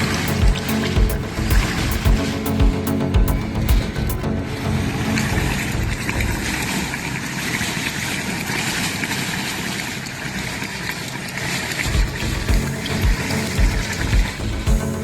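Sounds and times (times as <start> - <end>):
low thumps: 0.0 - 4.3, 11.9 - 15.0
rushing water: 0.0 - 15.0
wind: 0.0 - 15.0.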